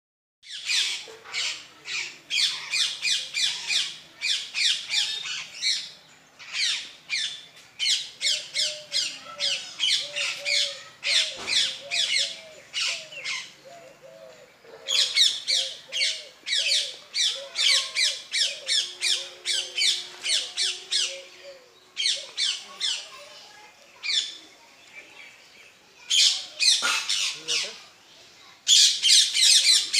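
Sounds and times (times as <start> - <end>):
birds squawking: 26.1 - 27.8.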